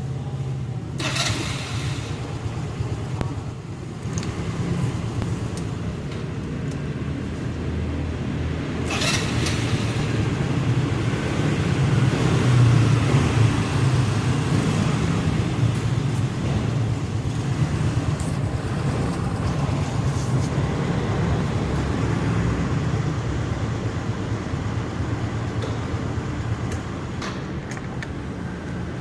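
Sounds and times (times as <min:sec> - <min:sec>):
scooter engine idling unsteadily: 0:00.1 - 0:06.0.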